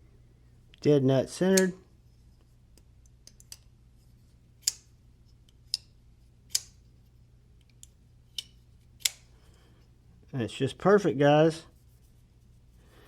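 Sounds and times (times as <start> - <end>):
folding knife clicking: 4.6 - 4.9, 6.5 - 6.8, 7.7 - 9.3.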